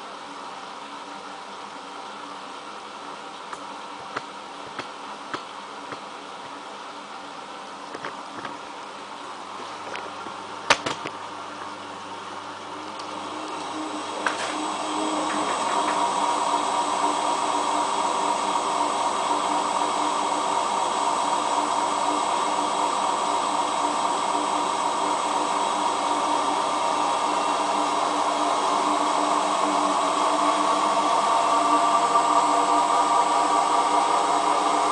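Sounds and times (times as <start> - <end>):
washing machine spinning: 8.2 - 34.9.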